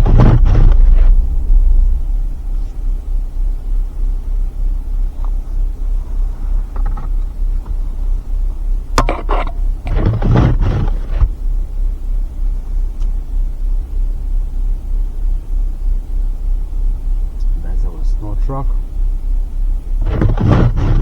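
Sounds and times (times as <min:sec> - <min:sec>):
vehicle engine low rumble: 0:00.0 - 0:21.0.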